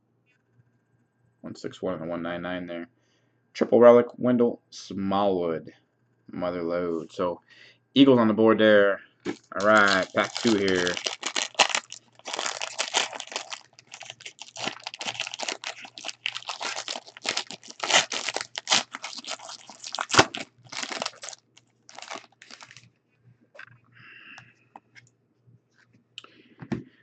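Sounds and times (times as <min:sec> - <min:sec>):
wrapper crinkling: 0:09.3 - 0:22.8
wrapper snap: 0:09.3 - 0:22.8.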